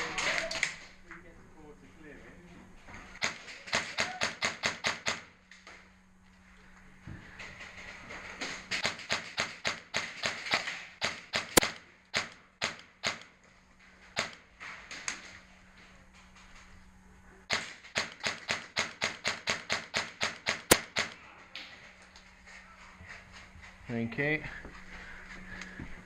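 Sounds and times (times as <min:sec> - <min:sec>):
airsoft gun shots: 0:08.8 - 0:13.3, 0:17.5 - 0:21.2.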